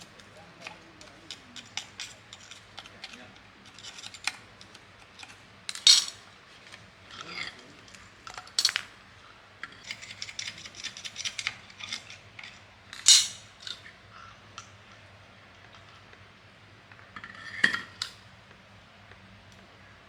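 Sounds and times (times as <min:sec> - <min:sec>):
metal tools clinking: 0:00.0 - 0:06.2, 0:09.6 - 0:13.9.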